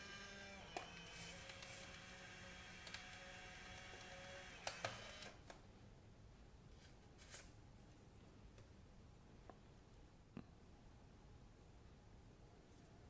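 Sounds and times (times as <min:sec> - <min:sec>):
camera motor whirring: 0:00.0 - 0:05.4.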